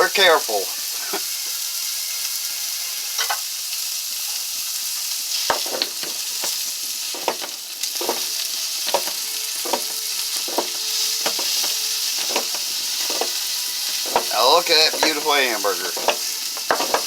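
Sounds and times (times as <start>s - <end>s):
wet hiss of grinding meat: 0.5s - 17.0s
meat grinder crank knocking: 7.2s - 8.3s, 8.9s - 9.9s, 10.5s - 17.0s.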